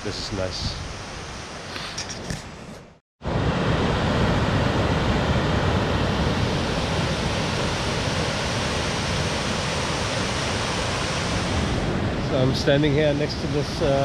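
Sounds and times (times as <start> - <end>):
waterfall rushing: 3.4 - 12.0.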